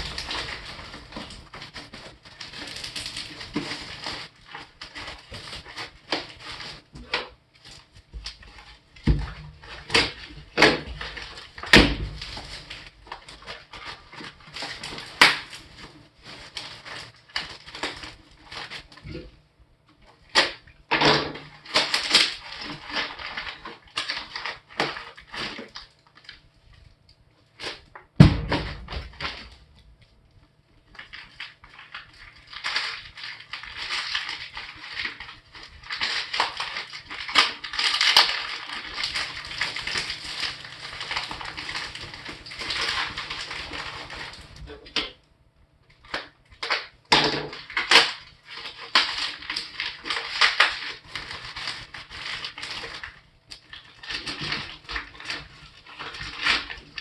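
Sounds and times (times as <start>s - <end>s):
cardboard and packing crackling: 0.0s - 45.2s, 45.8s - 57.0s
heavy thump: 28.2s - 29.0s.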